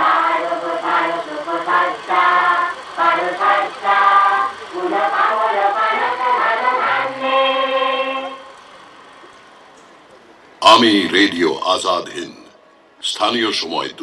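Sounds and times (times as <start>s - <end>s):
choral singing: 0.0s - 8.6s.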